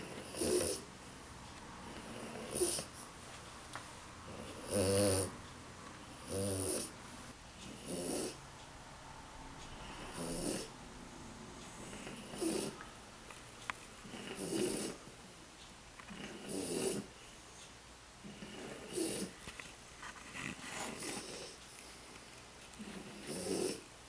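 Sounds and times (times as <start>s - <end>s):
dog snoring: 0.0s - 0.9s, 1.8s - 3.0s, 4.3s - 5.4s, 6.1s - 7.0s, 7.6s - 8.4s, 9.8s - 10.7s, 11.7s - 12.8s, 14.0s - 15.1s, 16.1s - 17.2s, 18.2s - 19.4s, 20.3s - 21.6s, 22.8s - 23.9s.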